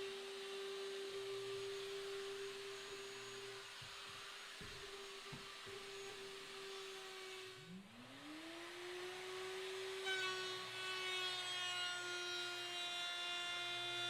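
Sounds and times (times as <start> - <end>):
electric router motor whine: 0.0 - 14.0.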